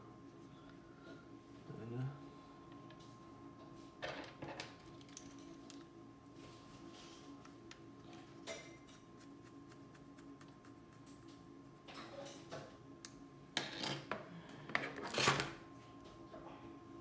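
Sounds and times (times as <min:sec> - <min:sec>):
steady low hum: 0:05.8 - 0:13.6.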